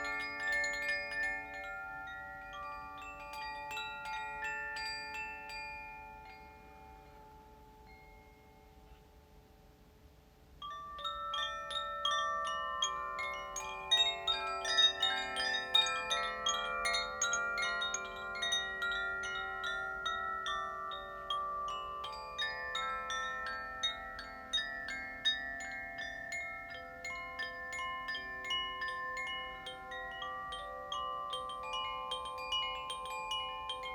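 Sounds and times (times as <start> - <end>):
wind chimes ringing: 0.0 - 9.7, 10.6 - 33.9.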